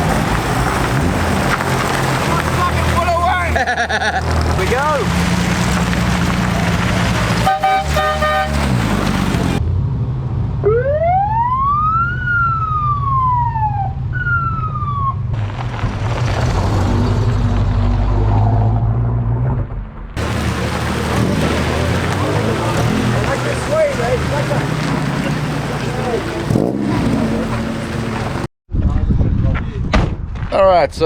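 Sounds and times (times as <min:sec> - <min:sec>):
car engines running: 0:00.0 - 0:10.5, 0:15.2 - 0:28.5
two-note car horn tooting: 0:07.4 - 0:08.9
siren wailing: 0:10.6 - 0:15.4.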